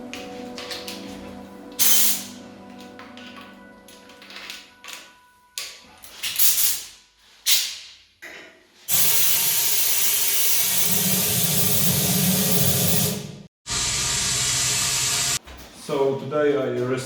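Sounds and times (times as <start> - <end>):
hissing spray: 8.9 - 15.4.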